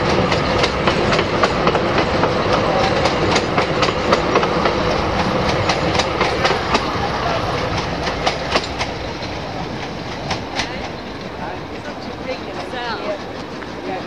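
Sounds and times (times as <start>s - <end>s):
train wheels rumbling on rail: 0.0s - 14.0s.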